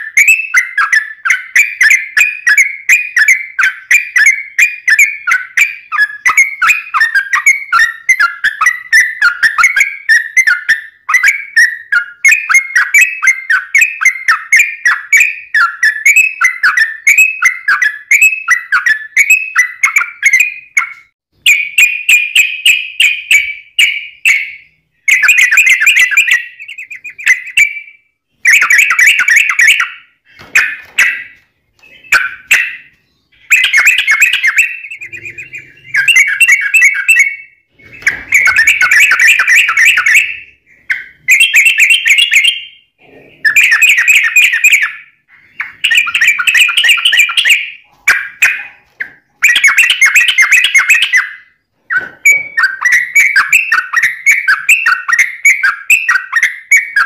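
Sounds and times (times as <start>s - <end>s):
bird chattering song: 0.0s - 57.0s.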